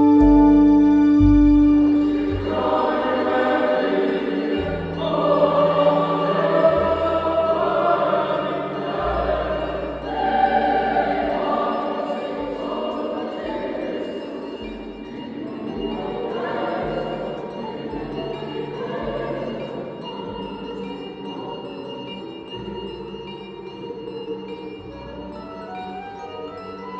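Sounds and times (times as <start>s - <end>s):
instrumental accompaniment: 0.0s - 9.0s
choir singing: 0.0s - 26.9s.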